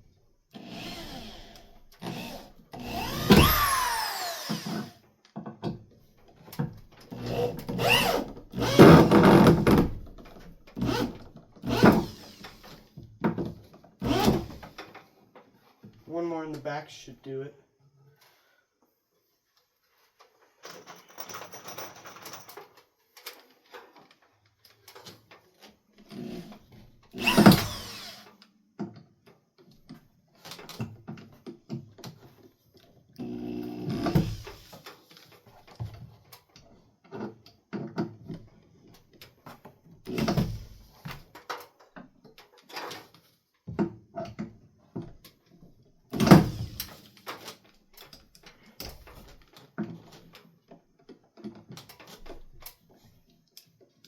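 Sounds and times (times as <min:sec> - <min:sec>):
power tool whir: 0:00.5 - 0:05.0, 0:07.1 - 0:09.8, 0:10.8 - 0:12.8, 0:14.0 - 0:14.8, 0:26.1 - 0:28.4, 0:33.2 - 0:34.8, 0:46.2 - 0:47.1.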